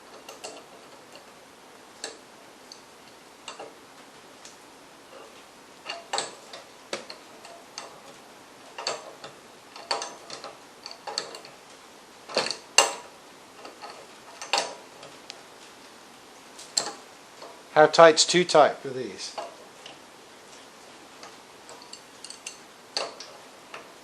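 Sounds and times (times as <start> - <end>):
metal clicks and clinks: 0.1 - 1.3, 5.1 - 8.2, 8.8 - 11.6, 12.3 - 15.1, 21.2 - 23.9.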